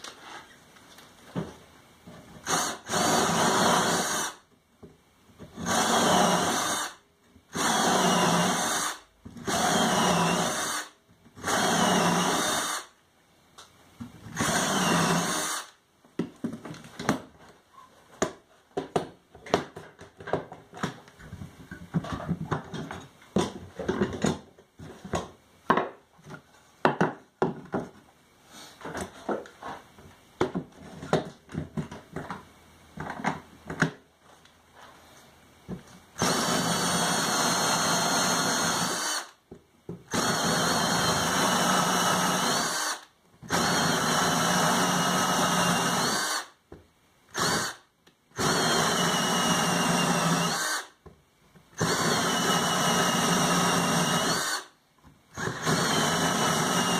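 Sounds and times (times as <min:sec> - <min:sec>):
electric drill boring into wood: 0:02.4 - 0:04.4, 0:05.6 - 0:12.9, 0:14.4 - 0:15.8, 0:36.2 - 0:39.4, 0:40.1 - 0:46.5, 0:47.3 - 0:47.8, 0:48.4 - 0:50.9, 0:51.8 - 0:54.7, 0:55.3 - 0:56.9.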